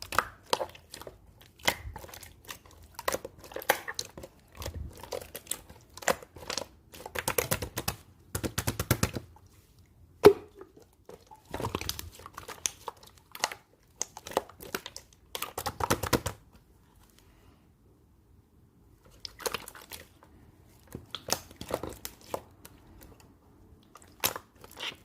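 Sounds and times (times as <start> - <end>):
slime crackling and popping: 0.0 - 9.1.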